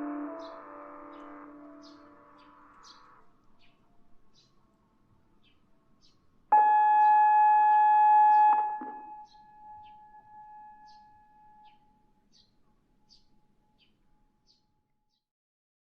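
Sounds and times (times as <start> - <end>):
electronic chime tone from loudspeaker: 6.6 - 11.1.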